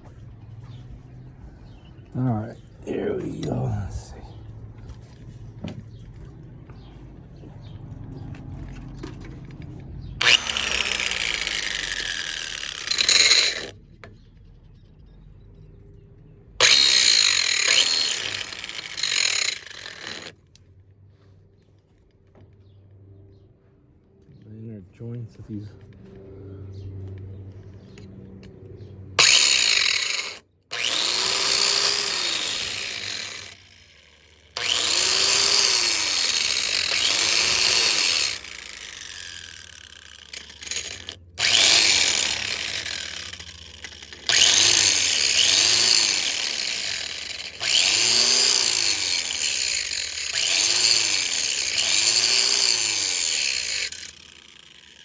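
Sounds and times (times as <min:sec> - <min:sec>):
angle grinder grinding metal: 0:10.2 - 0:13.8, 0:16.6 - 0:20.4, 0:29.2 - 0:55.0.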